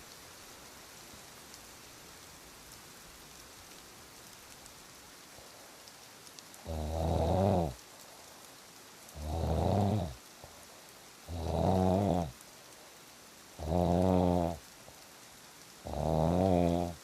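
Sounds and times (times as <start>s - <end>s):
person snoring: 6.6s - 7.8s, 9.2s - 10.2s, 11.3s - 12.4s, 13.6s - 14.6s, 15.8s - 17.0s.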